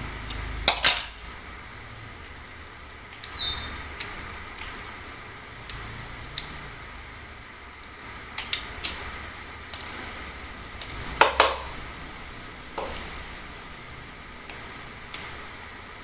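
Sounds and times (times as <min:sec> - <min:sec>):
metal parts clinking: 0:00.7 - 0:01.2.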